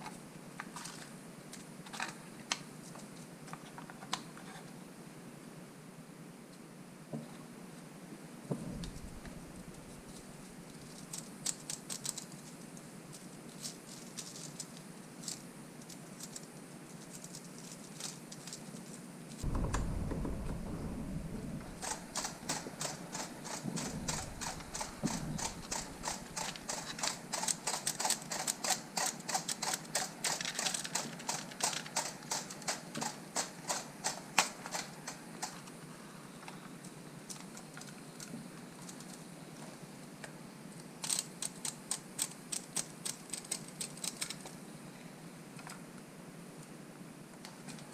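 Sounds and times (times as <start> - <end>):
low rumble: 8.5 - 11.0, 19.4 - 26.7
plastic flaps clacking: 19.4 - 28.5.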